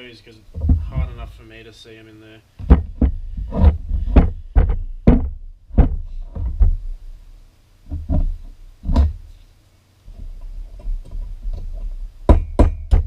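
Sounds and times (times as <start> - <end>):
hammer knocking on metal punch: 12.3 - 13.0.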